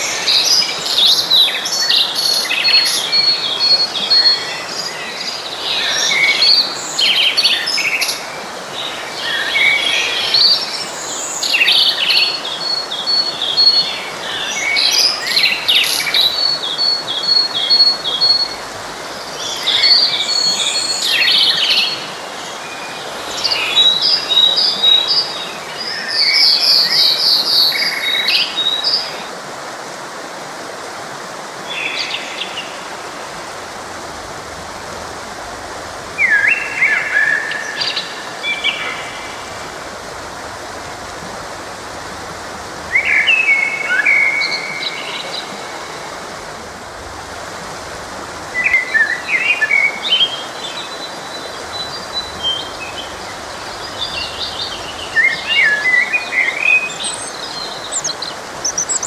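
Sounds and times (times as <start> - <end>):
songbirds singing: 0.0 - 29.3, 31.6 - 59.0
stream rushing: 0.0 - 59.0.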